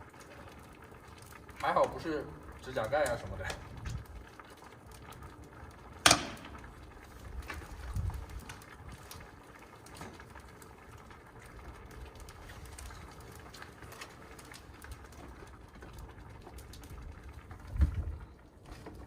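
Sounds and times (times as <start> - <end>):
wind buffeting microphone: 3.3 - 4.3, 6.7 - 9.2, 16.8 - 18.4.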